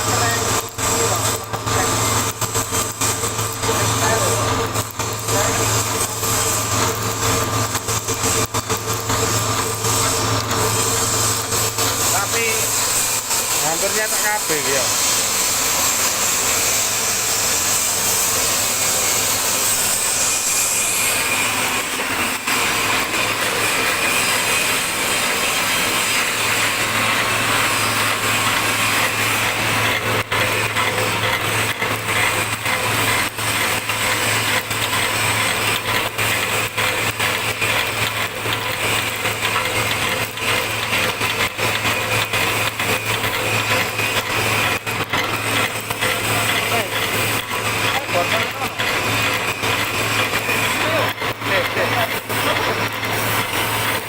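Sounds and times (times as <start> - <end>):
rapid irregular clicks: 0.0 - 16.8, 28.4 - 54.0
pellet mill machine noise: 0.0 - 54.0.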